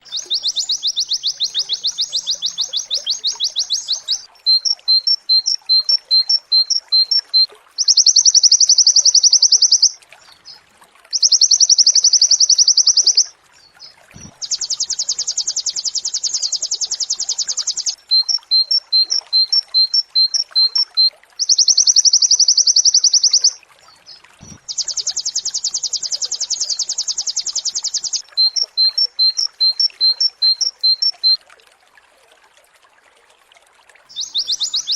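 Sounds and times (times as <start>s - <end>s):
bird fast high trills: 0.0s - 10.0s, 34.1s - 34.9s
bird two-note chirps: 0.1s - 7.2s.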